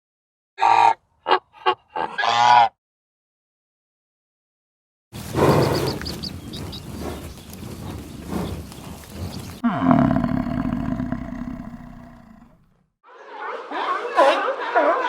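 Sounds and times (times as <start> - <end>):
rough animal sounds: 5.2 - 12.7
cow mooing: 9.6 - 12.6.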